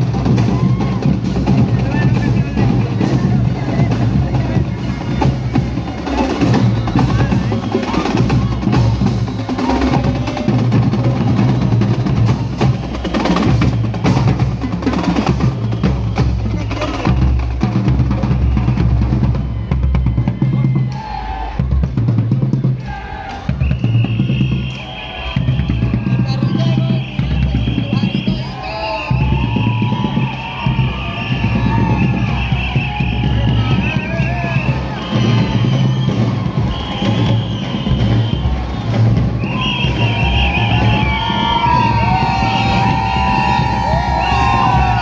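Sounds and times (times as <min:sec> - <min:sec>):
loud music with bass and drums: 0:29.2 - 0:45.0.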